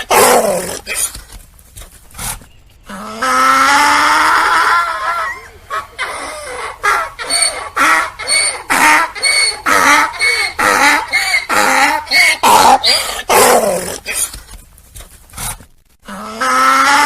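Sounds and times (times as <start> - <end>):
donkey braying: 2.2 - 14.2.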